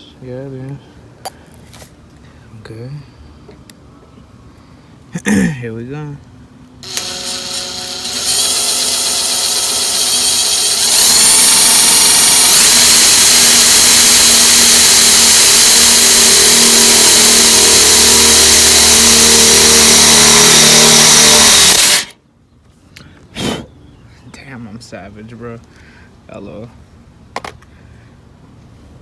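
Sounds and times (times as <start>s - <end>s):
power drill whining: 6.8s - 22.1s.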